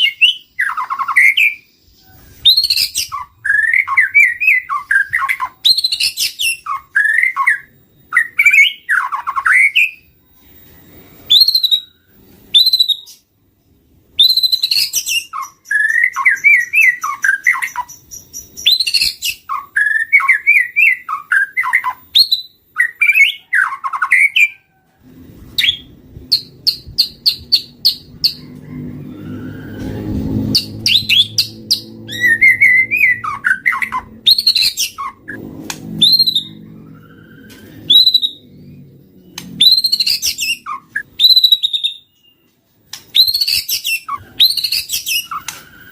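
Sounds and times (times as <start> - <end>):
bird singing whistled phrases: 0.0 - 13.2, 14.2 - 24.6, 30.5 - 35.4, 36.0 - 38.6, 39.4 - 42.4
low hum: 24.9 - 41.3.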